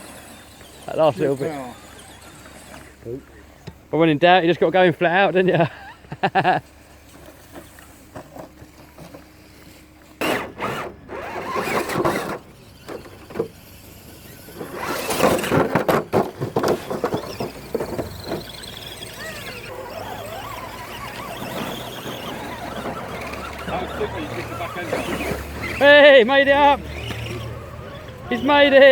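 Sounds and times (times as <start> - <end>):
electric motor whining: 0.0 - 3.9, 7.2 - 28.9
tyres scrabbling on stone: 7.2 - 28.9.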